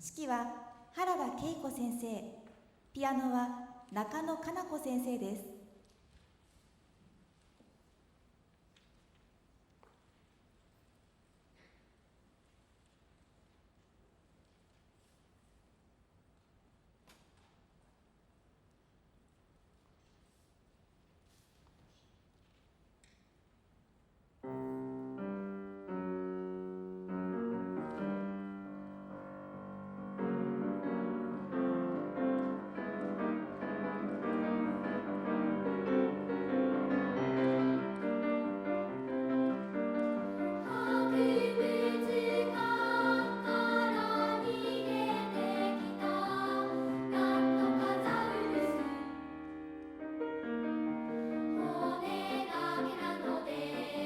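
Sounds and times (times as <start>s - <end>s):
piano: 24.4s - 54.0s
children's choir singing: 30.3s - 49.6s, 51.1s - 54.0s.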